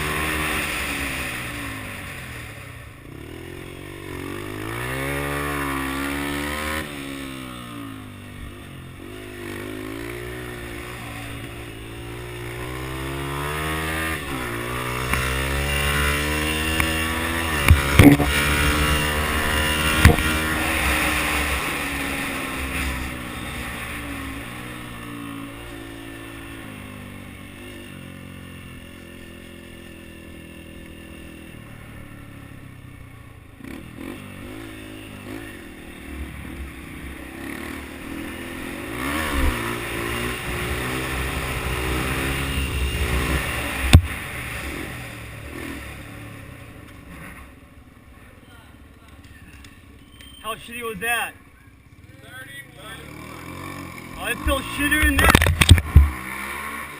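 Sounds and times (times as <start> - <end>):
dirt bike engine revving: 0.0 - 32.3, 33.6 - 47.5, 52.2 - 56.9
sharp cracks: 19.8 - 20.9, 54.9 - 56.3.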